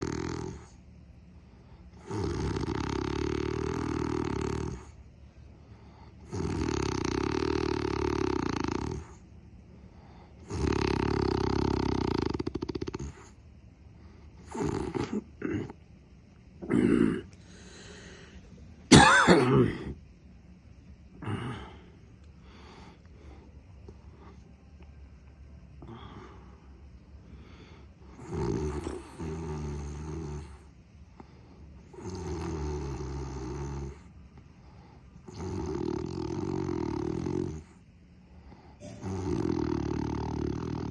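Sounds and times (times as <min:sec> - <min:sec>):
person snoring: 0:00.0 - 0:00.8, 0:01.9 - 0:05.0, 0:06.2 - 0:09.2, 0:10.4 - 0:13.4, 0:14.4 - 0:15.8, 0:25.8 - 0:26.6, 0:27.3 - 0:30.7, 0:31.9 - 0:34.1, 0:35.2 - 0:37.7, 0:38.8 - 0:40.9
person snorting while sleeping: 0:00.0 - 0:00.8, 0:01.6 - 0:05.0, 0:05.7 - 0:09.3, 0:09.9 - 0:13.4, 0:14.1 - 0:15.9, 0:16.6 - 0:20.0, 0:21.1 - 0:24.5, 0:25.8 - 0:40.9.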